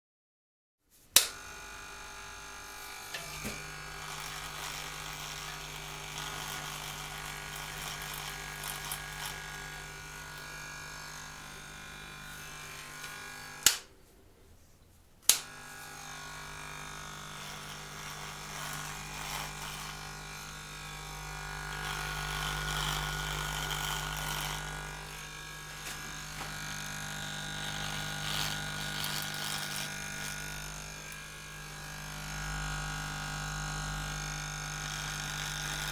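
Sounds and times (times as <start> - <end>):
shaver switch click: 1.2 - 1.4, 13.0 - 13.9, 15.2 - 15.6
electric shaver buzzing: 1.2 - 13.9, 15.3 - 35.9.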